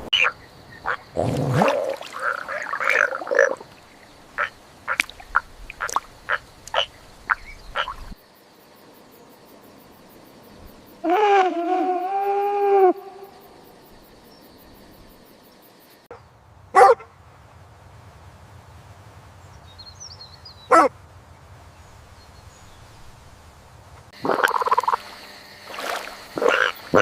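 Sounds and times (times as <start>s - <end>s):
dog barking: 16.7s - 17.1s, 20.7s - 20.9s
dog drawn-out call: 20.7s - 20.9s.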